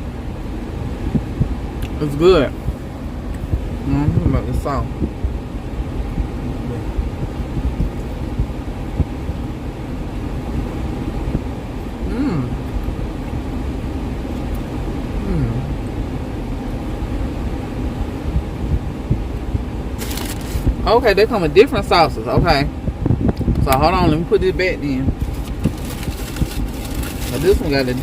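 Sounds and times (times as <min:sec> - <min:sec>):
vehicle engine rumble: 0:00.0 - 0:28.0
person humming: 0:12.0 - 0:12.6, 0:15.2 - 0:15.8.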